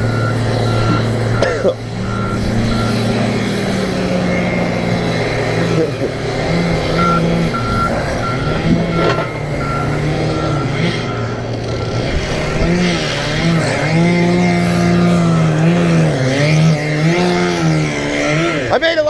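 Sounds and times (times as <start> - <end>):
backup alarm beeping: 0.0 - 3.3, 6.9 - 12.7
heavy machinery engine: 0.0 - 19.0.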